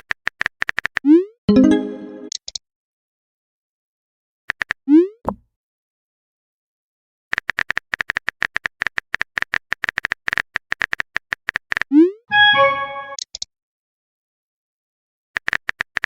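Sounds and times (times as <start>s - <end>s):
short multi-tone chime: 1.5s - 2.3s, 12.3s - 13.2s.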